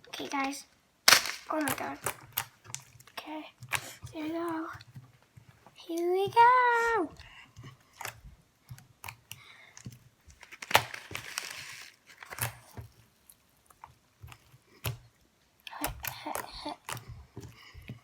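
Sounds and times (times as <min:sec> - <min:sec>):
foam beads crackling in slime: 0:01.1 - 0:02.5, 0:10.4 - 0:12.7.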